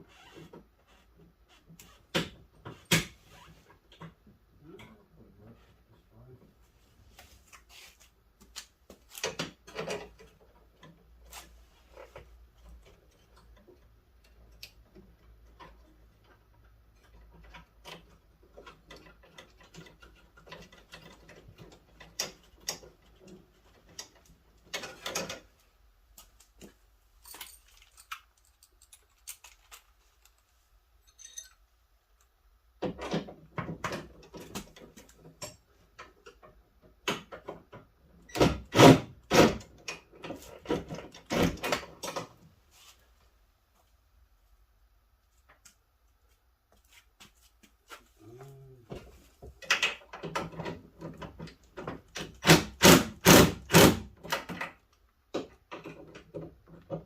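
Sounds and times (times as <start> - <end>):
metal parts clinking: 27.2 - 31.7.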